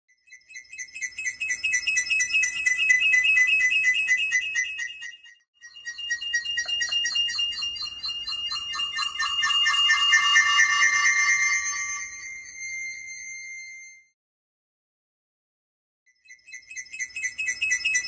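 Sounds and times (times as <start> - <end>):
shrill pulsing tones: 8.6 - 13.5.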